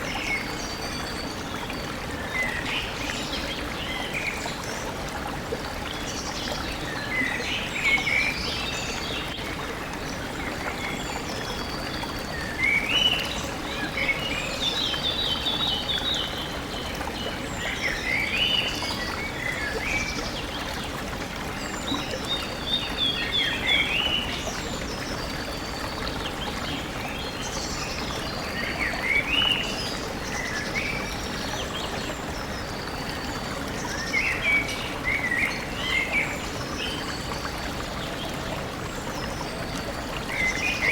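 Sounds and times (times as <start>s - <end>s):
stream running: 0.0s - 40.9s.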